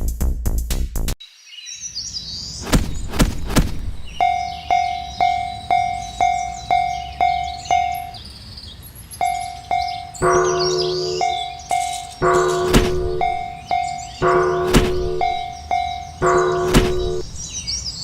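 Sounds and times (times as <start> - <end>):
birds chirping faintly: 1.2 - 18.0
sharp knocks: 2.6 - 4.5, 10.2 - 17.5
level-crossing warning bell: 4.1 - 8.2, 9.2 - 17.5
lower-pitched bell tone: 4.2 - 8.2, 9.2 - 17.4.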